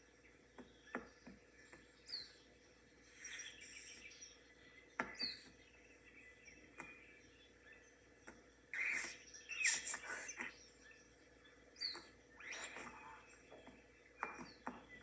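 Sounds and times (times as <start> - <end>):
faint steady hum: 0.0 - 15.0
high chirping squeaks: 8.7 - 10.7, 11.8 - 13.6.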